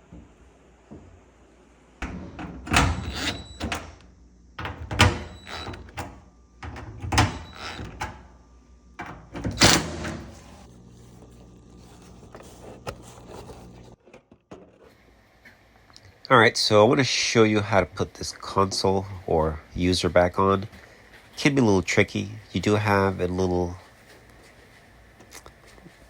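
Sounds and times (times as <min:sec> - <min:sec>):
metal panels rattling: 0:09.0 - 0:10.6.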